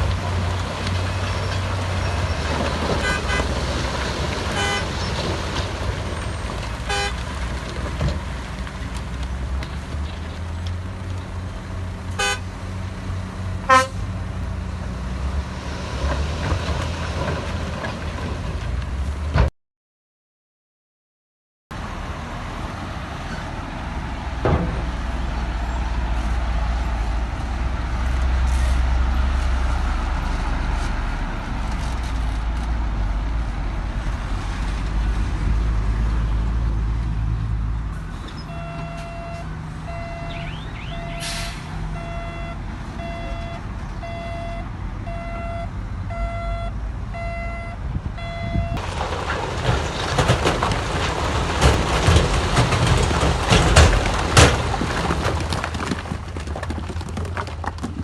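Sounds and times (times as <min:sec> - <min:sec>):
diesel machinery rumbling: 0:00.0 - 0:19.5, 0:21.7 - 0:58.0
reversing alarm beeping: 0:38.4 - 0:48.8.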